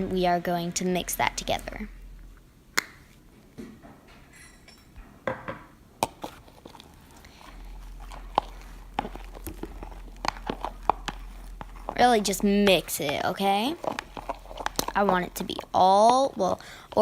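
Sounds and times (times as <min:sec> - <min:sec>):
wet squishing: 0:06.0 - 0:17.0.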